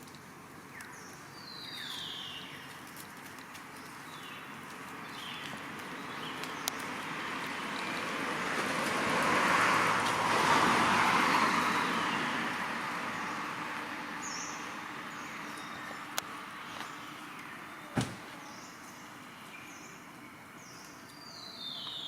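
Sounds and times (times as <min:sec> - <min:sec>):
vehicle passing by: 0:06.0 - 0:17.0.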